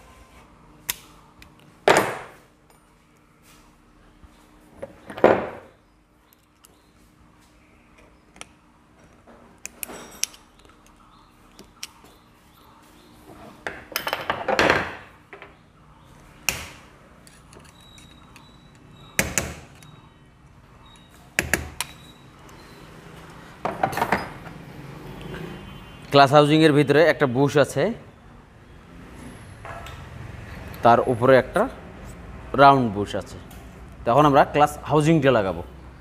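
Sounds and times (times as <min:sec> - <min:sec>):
metal tools clicking and knocking: 0:08.4 - 0:12.0, 0:13.7 - 0:15.6.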